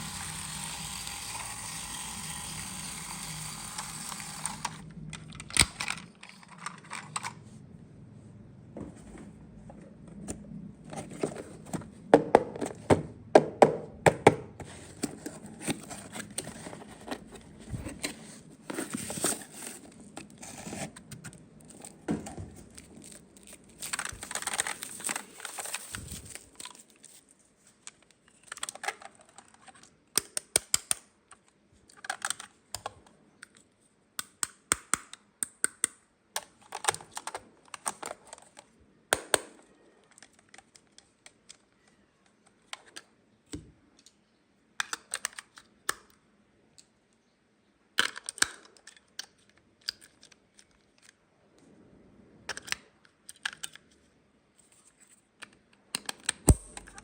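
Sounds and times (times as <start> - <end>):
plastic toy pieces clicking: 0.0 - 7.3.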